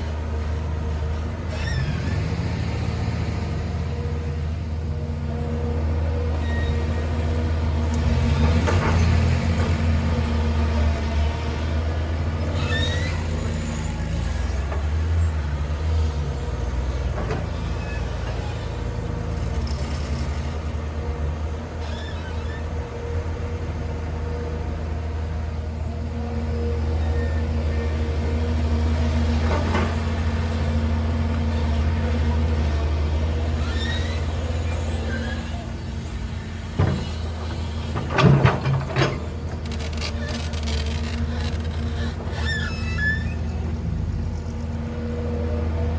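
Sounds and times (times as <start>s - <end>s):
heavy machine engine rumbling: 0.0s - 45.9s
rising squeal: 6.3s - 7.1s, 12.5s - 14.2s, 21.8s - 22.8s, 33.5s - 35.6s, 39.8s - 43.6s
machinery clunk: 36.7s - 42.0s.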